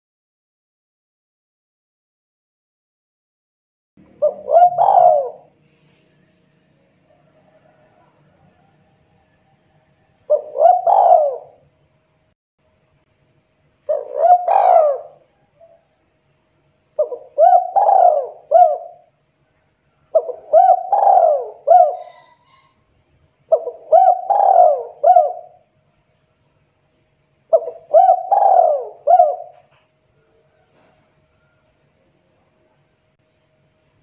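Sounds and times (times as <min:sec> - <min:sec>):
dove cooing: 0:04.0 - 0:05.6, 0:07.0 - 0:11.6, 0:13.8 - 0:15.9, 0:17.0 - 0:19.2, 0:19.9 - 0:22.8, 0:23.5 - 0:25.7, 0:27.5 - 0:31.6.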